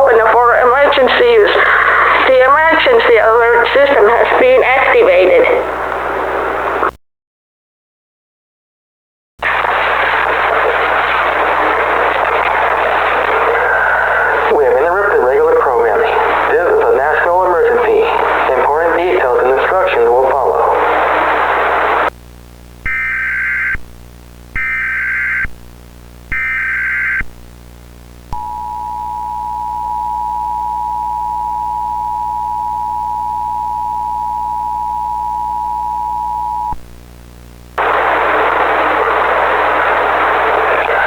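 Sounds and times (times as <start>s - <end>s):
steady hiss of noise: 0.0s - 6.9s, 9.4s - 28.4s, 36.7s - 41.0s
data burst tones: 22.9s - 23.8s, 24.6s - 25.5s, 26.3s - 27.3s.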